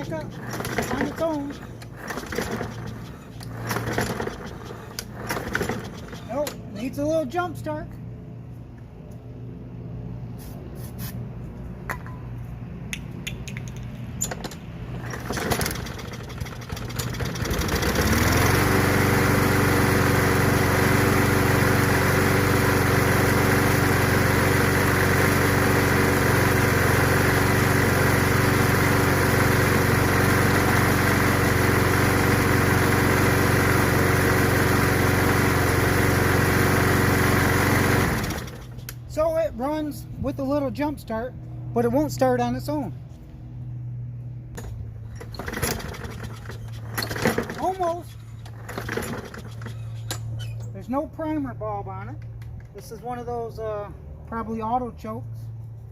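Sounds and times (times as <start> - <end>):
mower engine running: 0.0 - 6.7, 14.9 - 39.0, 45.0 - 50.0.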